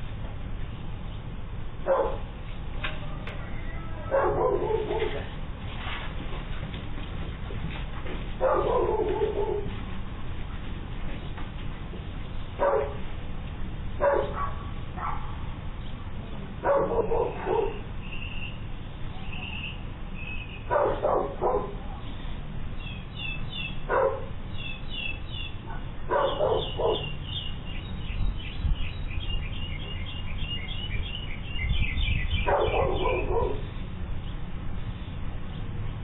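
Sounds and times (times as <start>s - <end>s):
dog barking: 1.8s - 2.3s, 4.1s - 5.3s, 8.4s - 9.7s, 12.6s - 13.0s, 14.0s - 15.4s, 16.6s - 17.8s, 20.7s - 22.0s, 23.9s - 24.3s, 25.6s - 27.2s, 32.4s - 33.7s
small birds chirping: 14.0s - 36.0s.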